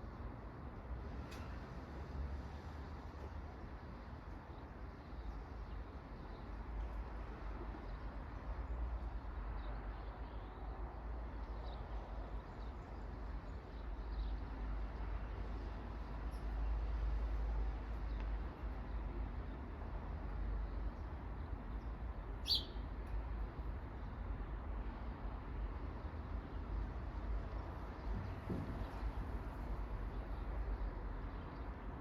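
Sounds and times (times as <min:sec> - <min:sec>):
bird chirps: 0:22.4 - 0:22.8.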